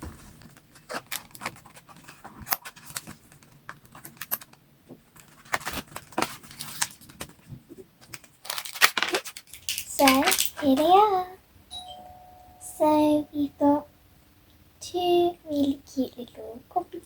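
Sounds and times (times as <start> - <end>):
plastic packaging crinkling: 0.5 - 11.0.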